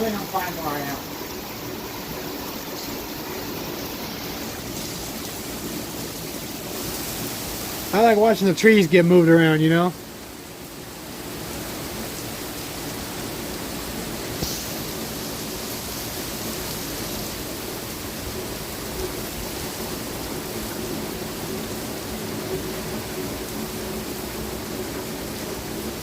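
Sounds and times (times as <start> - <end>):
strong wind blowing through trees: 0.0 - 26.0.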